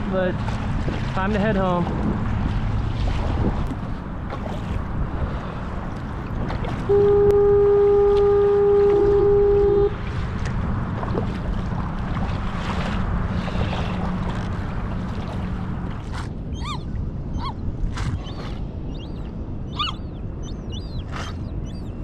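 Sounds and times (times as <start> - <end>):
water noise: 0.0 - 22.0
wind: 0.0 - 22.0
boat horn blast: 6.8 - 10.2
bird calling: 16.5 - 17.6, 18.2 - 22.0.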